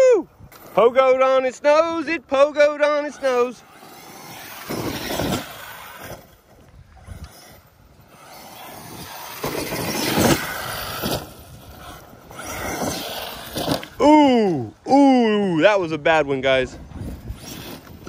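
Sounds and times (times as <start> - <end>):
electric toy truck motor whirring: 2.8 - 14.5, 16.8 - 18.0.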